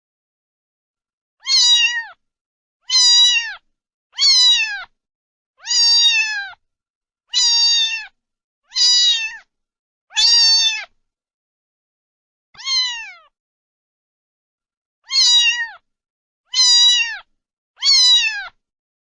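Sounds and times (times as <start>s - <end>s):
cat meowing: 1.4s - 2.2s, 2.8s - 5.0s, 5.6s - 6.6s, 7.3s - 9.5s, 10.1s - 11.0s, 12.6s - 13.4s, 15.0s - 15.8s, 16.5s - 18.6s.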